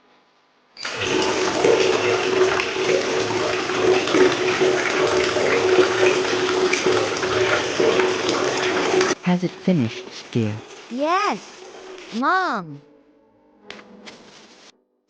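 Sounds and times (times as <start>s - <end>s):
tap water running into bucket: 0.8s - 12.1s.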